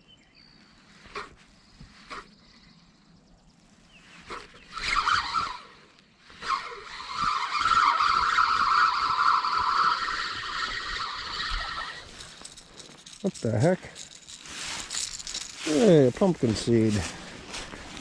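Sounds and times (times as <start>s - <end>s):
fishing reel whirring: 4.7s - 15.9s.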